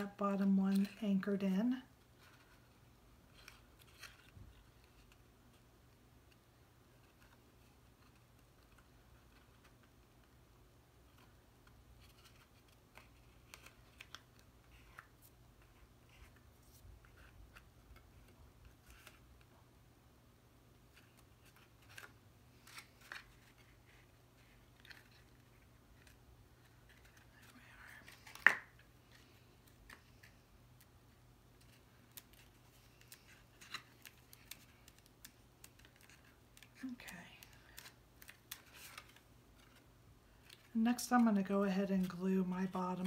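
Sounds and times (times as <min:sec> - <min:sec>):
cardstock rustling: 0:00.0 - 0:01.4, 0:11.0 - 0:19.5, 0:20.9 - 0:41.4.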